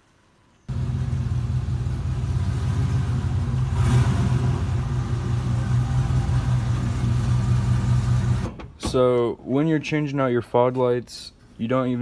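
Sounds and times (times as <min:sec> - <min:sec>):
vee eight engine running: 0:00.7 - 0:08.5.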